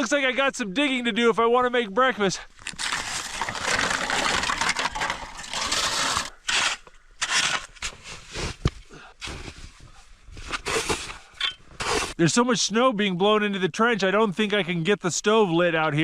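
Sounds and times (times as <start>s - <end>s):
shovel scraping snow: 2.6s - 9.8s, 10.4s - 12.2s.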